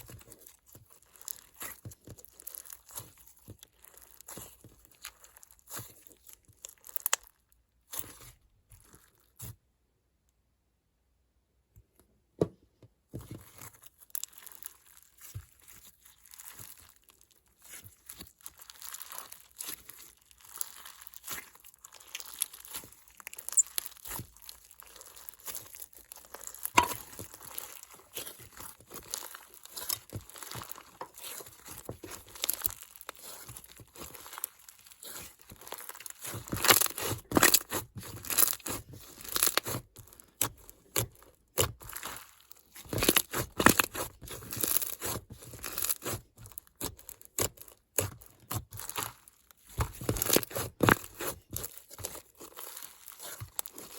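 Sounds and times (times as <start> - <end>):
slime crackling and clicking: 0.6 - 7.4, 18.0 - 53.9.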